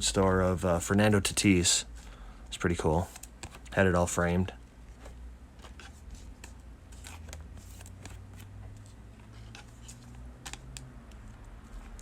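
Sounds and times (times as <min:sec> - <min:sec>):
trading cards clicking and rustling: 0:02.8 - 0:03.8, 0:04.9 - 0:12.0.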